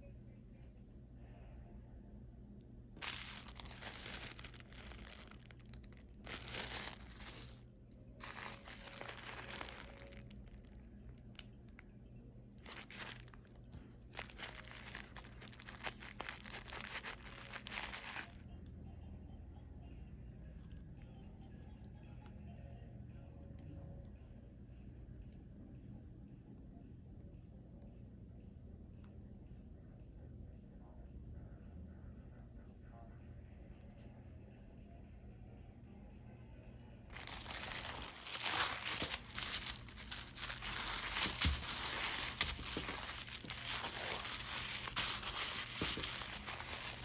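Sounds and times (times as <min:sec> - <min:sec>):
packaging torn and crumpled: 0:03.0 - 0:07.6, 0:08.2 - 0:10.8, 0:12.6 - 0:18.4, 0:37.1 - 0:47.0.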